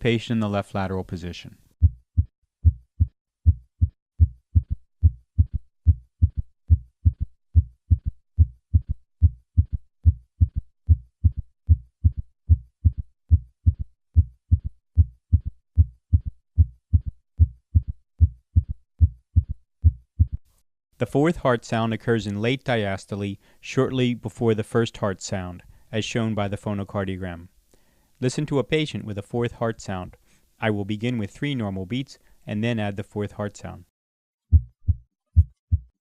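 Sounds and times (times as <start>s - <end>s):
heartbeat through stethoscope: 1.8s - 20.4s, 34.5s - 36.0s.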